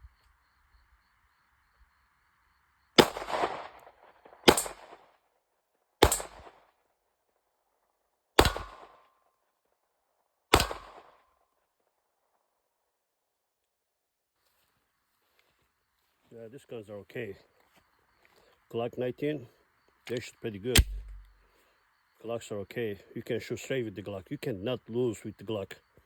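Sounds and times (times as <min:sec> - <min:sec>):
pistol shots with echo: 0:03.0 - 0:03.8, 0:04.4 - 0:05.1, 0:06.0 - 0:06.6, 0:08.4 - 0:09.1, 0:10.5 - 0:11.2, 0:20.8 - 0:21.3.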